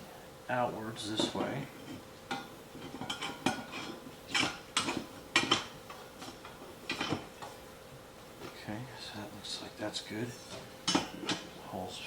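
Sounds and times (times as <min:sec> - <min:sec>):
furniture parts clinking and knocking: 0:01.2 - 0:07.6, 0:10.5 - 0:11.5.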